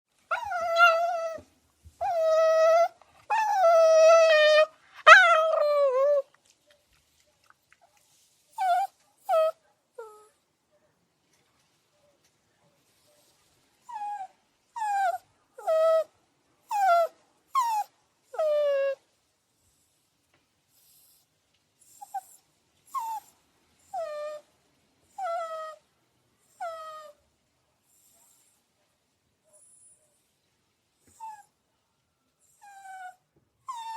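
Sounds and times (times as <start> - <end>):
dog whining: 0.3 - 6.3, 8.6 - 10.4, 13.9 - 16.1, 16.7 - 19.0, 21.9 - 23.3, 25.1 - 25.8, 26.5 - 27.2, 31.1 - 31.5, 32.5 - 33.9.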